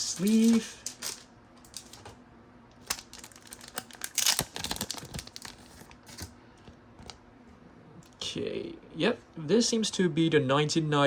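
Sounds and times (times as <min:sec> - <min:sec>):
plastic card sleeve crinkling: 0:00.2 - 0:02.0, 0:02.8 - 0:06.4.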